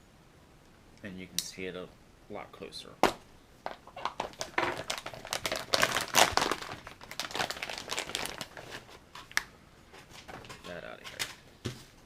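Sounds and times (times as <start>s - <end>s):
plastic bag crinkling: 3.6s - 9.4s.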